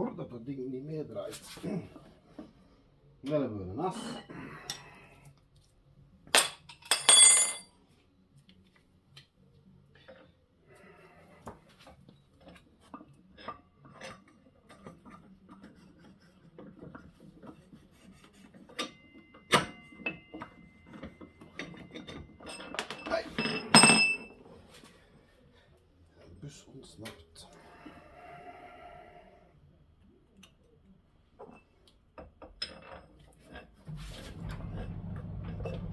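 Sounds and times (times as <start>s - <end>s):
metal parts clinking: 6.4s - 7.7s, 22.5s - 24.3s
small knocks and scraping: 11.5s - 23.1s.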